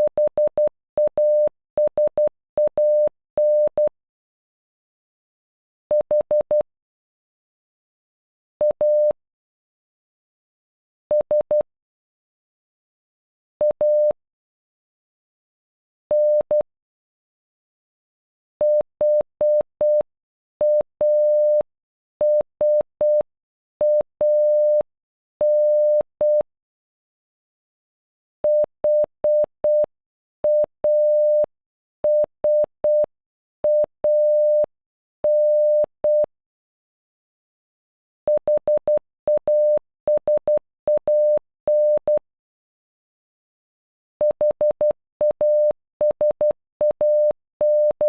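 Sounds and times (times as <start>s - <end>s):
morse code beep tone: 0.0s - 3.9s, 8.6s - 9.2s, 13.6s - 14.2s, 18.6s - 26.5s, 28.5s - 31.5s, 32.1s - 36.3s, 38.3s - 42.2s, 44.2s - 48.0s.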